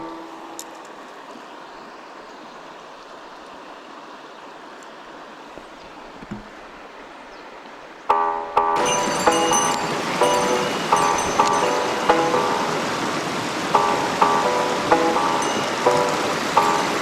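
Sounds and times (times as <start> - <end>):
music: 0.0 - 0.8, 8.1 - 17.0
stream water flowing: 0.0 - 17.0.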